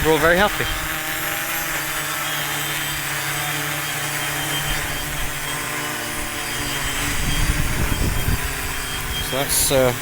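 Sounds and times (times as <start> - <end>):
drone hovering buzz: 0.0 - 10.0
wind rumbling on microphone: 6.1 - 9.8.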